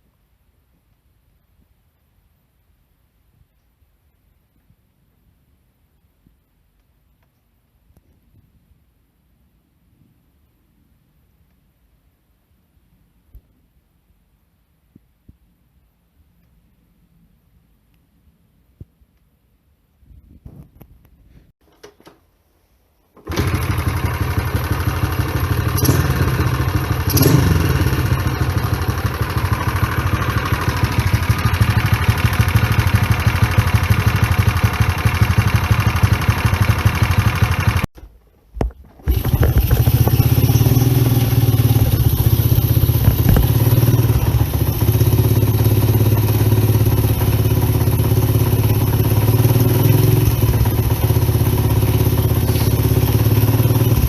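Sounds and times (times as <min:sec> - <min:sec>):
small motorcycle engine running: 0:23.2 - 0:37.9, 0:39.0 - 0:54.0.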